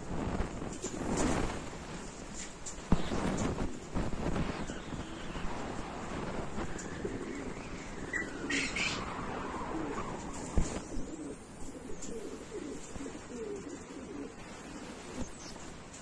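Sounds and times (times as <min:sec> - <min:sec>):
pigeons cooing: 0:06.4 - 0:16.0.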